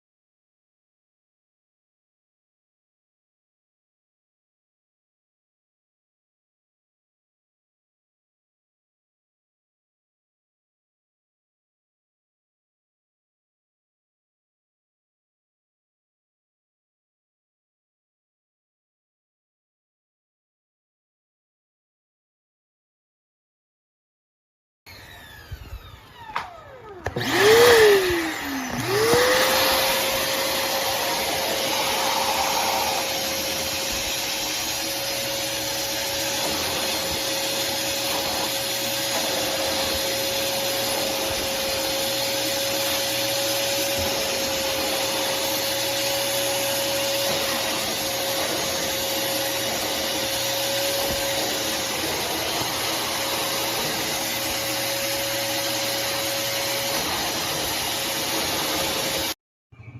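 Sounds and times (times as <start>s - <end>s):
vacuum cleaner motor whine: 24.9s - 59.4s.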